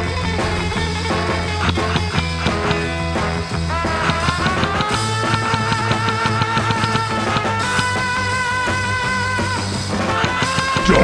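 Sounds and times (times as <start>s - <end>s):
fast drum beat: 0.0s - 11.0s
rock music: 0.0s - 11.0s.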